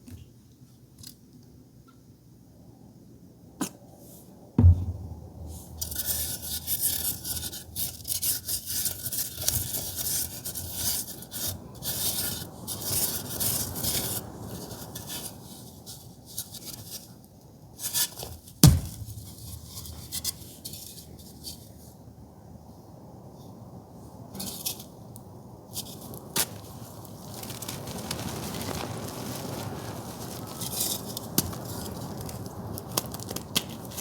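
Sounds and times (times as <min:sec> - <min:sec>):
sharp thump: 0:04.6 - 0:07.1, 0:18.6 - 0:20.2.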